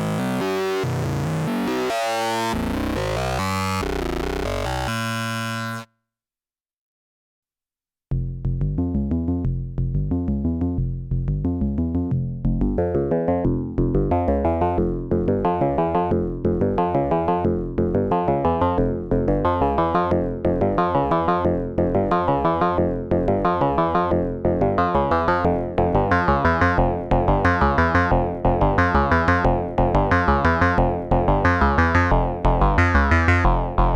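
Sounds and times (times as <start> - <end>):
sequenced synth pattern: 1.5 - 5.9, 23.4 - 33.9.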